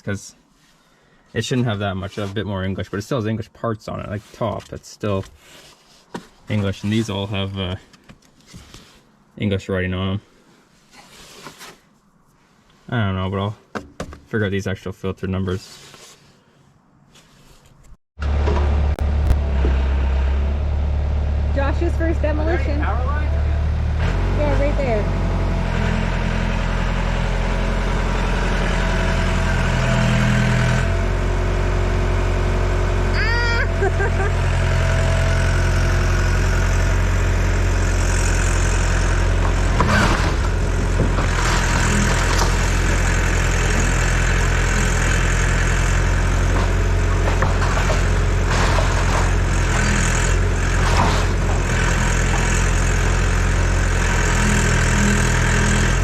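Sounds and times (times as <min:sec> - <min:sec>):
excavator diesel engine running: 0:18.2 - 0:56.0
cracks and knocks: 0:46.5 - 0:49.4.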